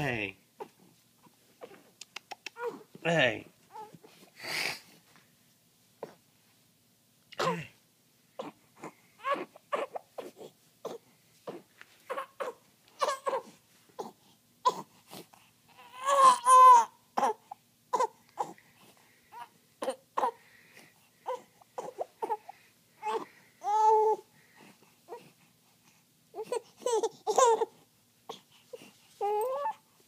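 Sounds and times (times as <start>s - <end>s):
baby crying: 2.6s - 2.9s, 3.7s - 4.0s, 8.4s - 14.9s, 15.7s - 18.6s, 19.3s - 20.4s, 21.2s - 24.3s, 26.4s - 28.4s, 29.2s - 29.8s
baby grunting: 7.4s - 7.8s, 8.4s - 18.6s.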